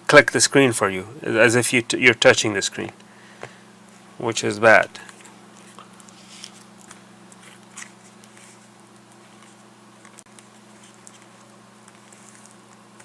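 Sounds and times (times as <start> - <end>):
low steady hum: 0.0 - 13.0
faint clicks and crackles: 5.0 - 13.0.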